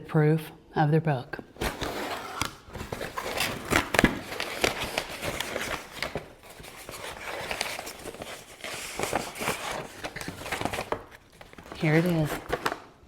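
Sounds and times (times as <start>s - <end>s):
packaging torn and crinkled: 1.6s - 13.0s.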